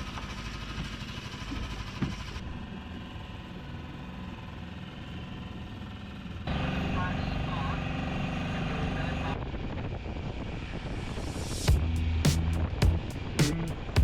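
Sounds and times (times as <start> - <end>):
small boat engine running: 0.0 - 9.4.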